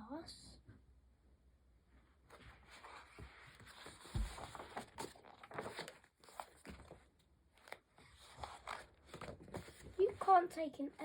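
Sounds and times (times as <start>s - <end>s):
book pages turning: 2.3s - 10.5s.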